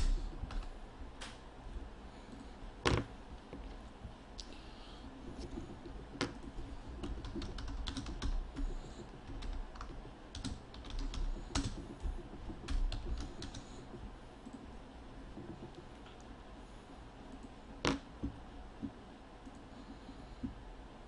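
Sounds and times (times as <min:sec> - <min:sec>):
typing on computer keyboard: 0:05.4 - 0:13.9.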